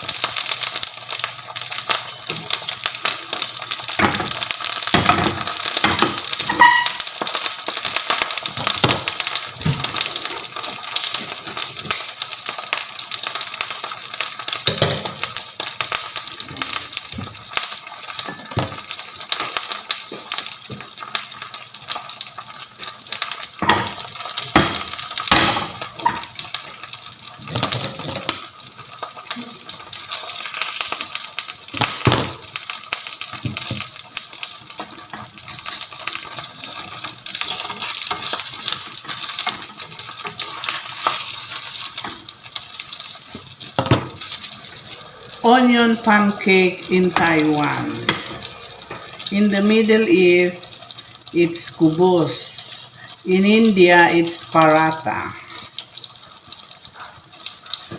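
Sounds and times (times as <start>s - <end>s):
pancake sizzling in hot oil: 0.0s - 57.9s.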